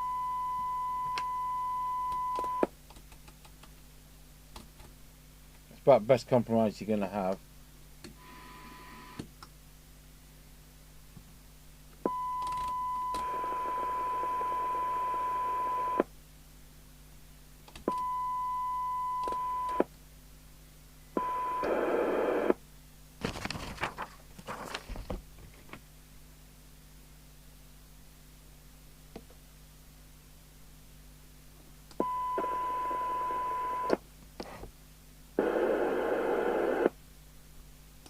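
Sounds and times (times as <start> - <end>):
radio hiss: 21.2 - 22.6, 35.4 - 37.0.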